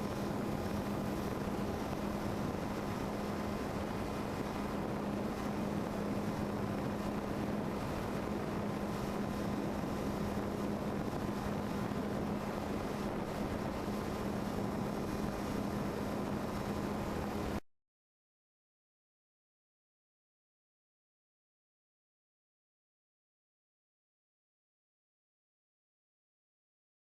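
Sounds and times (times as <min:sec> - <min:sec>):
constant rush of noise: 0:00.0 - 0:17.6.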